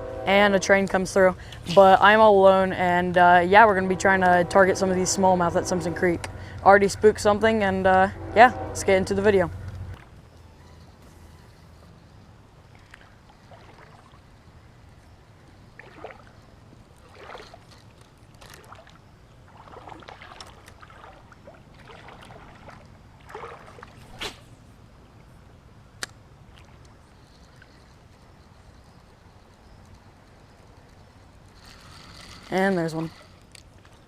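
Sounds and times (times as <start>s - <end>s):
creek water running: 12.3s - 25.4s
small splashes: 12.6s - 14.6s, 15.6s - 24.6s, 26.4s - 27.1s.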